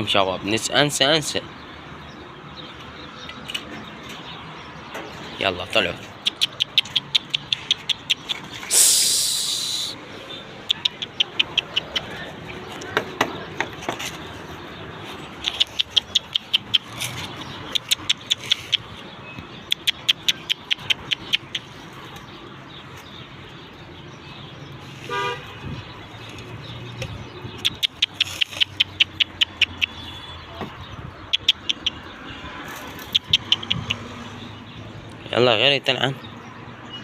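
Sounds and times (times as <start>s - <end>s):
quick runs of sharp clicks: 27.0s - 30.0s.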